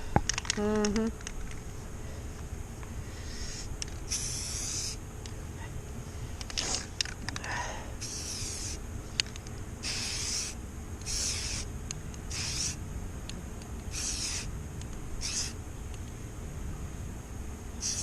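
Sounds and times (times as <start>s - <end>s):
aerosol spray can hissing: 3.2s - 5.0s, 8.0s - 8.8s, 9.8s - 11.7s, 12.3s - 12.8s, 13.9s - 14.5s, 15.2s - 15.6s, 17.8s - 18.0s.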